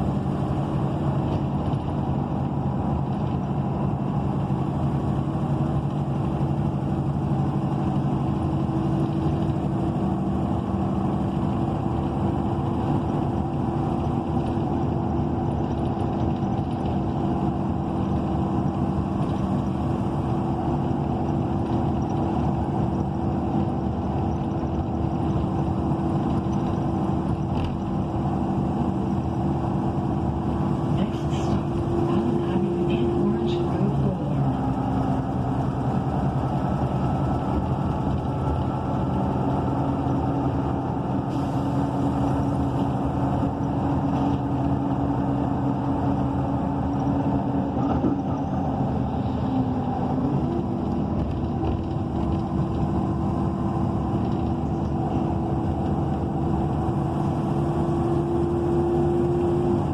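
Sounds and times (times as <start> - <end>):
bus engine droning: 0.0 - 59.9
road and drivetrain noise: 0.0 - 59.9.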